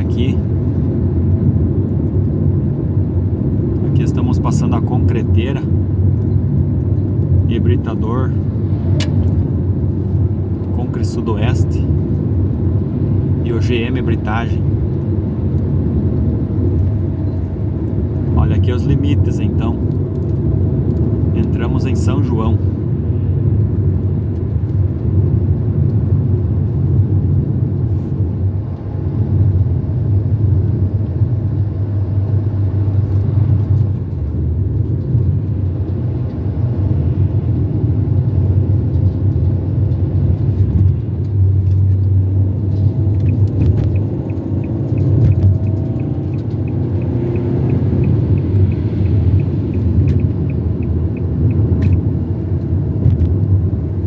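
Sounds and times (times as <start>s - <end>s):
car engine and tyre rumble: 0.0s - 54.0s
light regular ticking: 41.2s - 53.5s.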